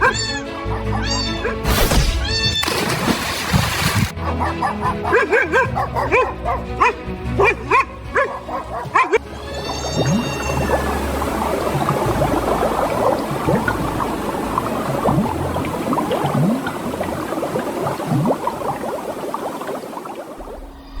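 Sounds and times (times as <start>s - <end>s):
water bubbling and gurgling: 9.2s - 21.0s.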